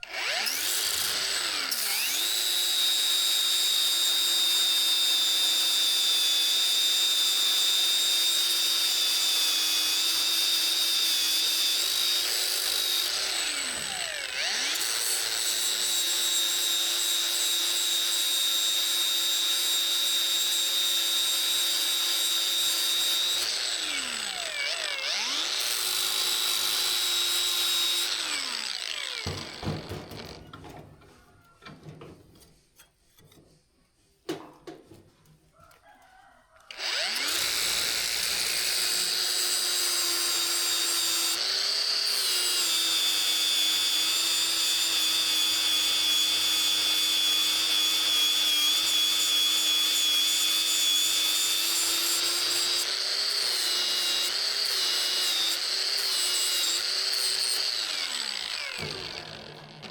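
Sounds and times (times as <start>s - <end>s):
power tool motor whining: 0.0s - 30.7s, 36.7s - 59.9s.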